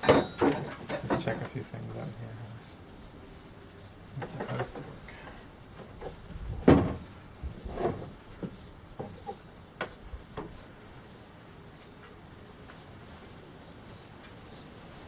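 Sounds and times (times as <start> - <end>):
parts knocking and clunking: 0.0 - 1.6, 4.1 - 10.6.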